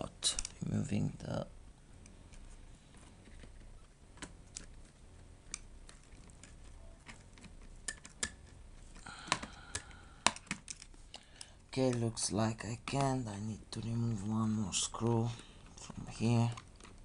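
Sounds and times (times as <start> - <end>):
small laptop parts clicking: 3.2 - 12.0, 15.4 - 17.0.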